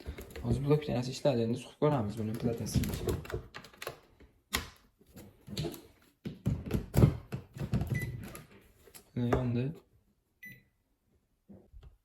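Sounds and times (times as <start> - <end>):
plastic parts clicking and knocking: 0.0 - 0.8, 2.0 - 9.5.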